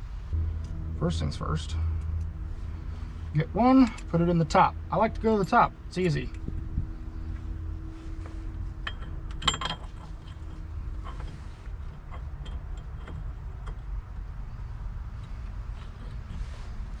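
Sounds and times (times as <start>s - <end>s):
steady low rumble: 0.0s - 17.0s
metal screws clinking: 8.8s - 14.1s.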